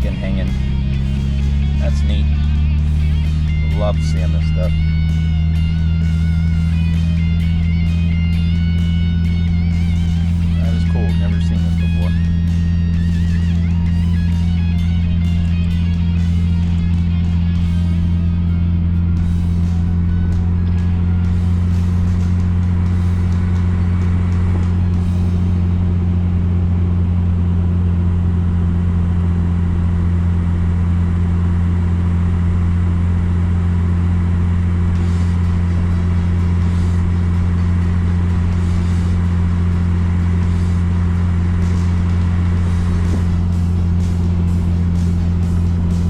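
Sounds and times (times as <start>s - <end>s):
car engine and road noise drone: 0.0s - 46.0s.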